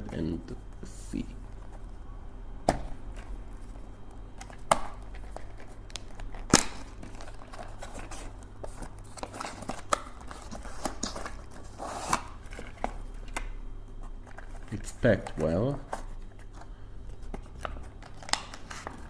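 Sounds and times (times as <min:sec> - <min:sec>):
packaging crinkling and tearing: 0:04.4 - 0:13.4, 0:17.4 - 0:19.0.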